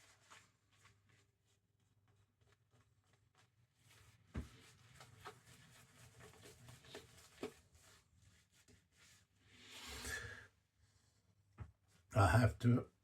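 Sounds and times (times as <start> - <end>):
shaving brush lathering soap: 1.4 - 9.4.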